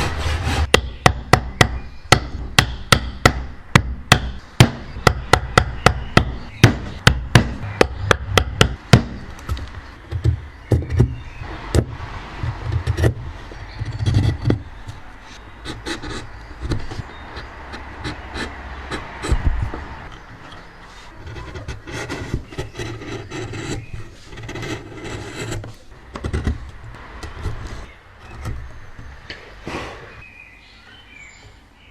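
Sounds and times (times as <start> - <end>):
hammer striking wood: 0.5 - 13.2.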